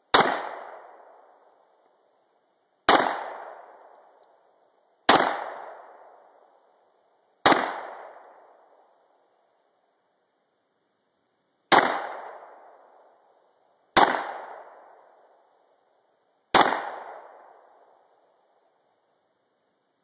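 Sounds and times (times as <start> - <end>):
gunshots with echo: 0.1 - 1.0, 2.9 - 3.7, 5.1 - 6.0, 16.5 - 17.4.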